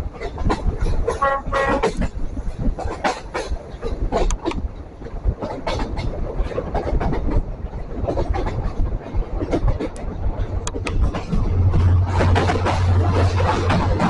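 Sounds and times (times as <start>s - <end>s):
train rumble: 0.0s - 14.0s
train wheels clicking on rails: 0.0s - 14.0s.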